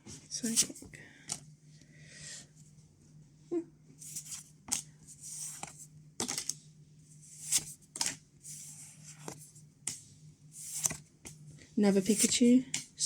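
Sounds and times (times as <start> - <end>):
cards snapping and swishing: 10.6 - 11.0.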